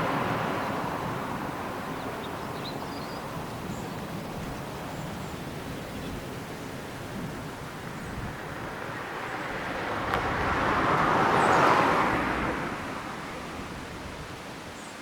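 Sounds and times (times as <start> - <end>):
car passing by: 0.0 - 14.9.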